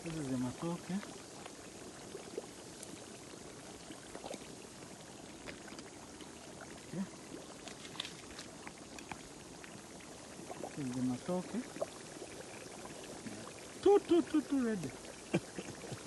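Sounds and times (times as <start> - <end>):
stream flowing and bubbling: 0.0 - 16.0.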